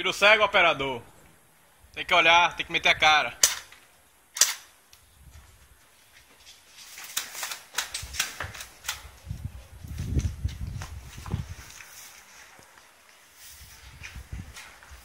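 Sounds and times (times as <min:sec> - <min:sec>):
footsteps: 0:05.2 - 0:15.0.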